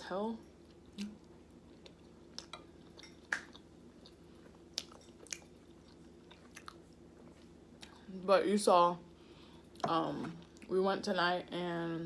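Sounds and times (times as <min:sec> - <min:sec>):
faint steady hum: 0:00.0 - 0:12.0
close-up chewing: 0:00.7 - 0:08.0.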